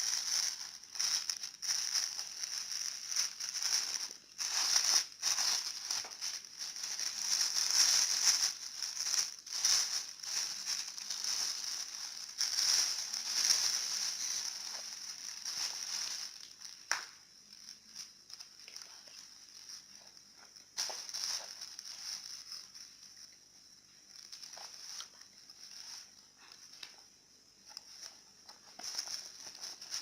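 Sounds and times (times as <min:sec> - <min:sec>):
plastic packaging crinkling: 0:00.0 - 0:27.1, 0:27.7 - 0:30.0.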